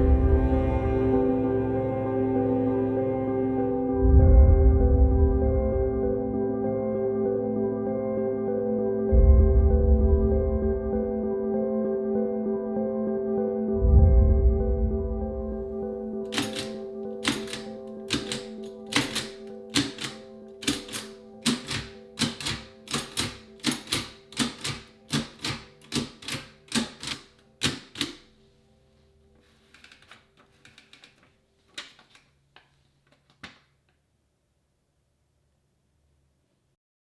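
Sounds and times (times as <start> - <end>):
background music: 0.0 - 32.2
typewriter key strikes: 16.3 - 28.3.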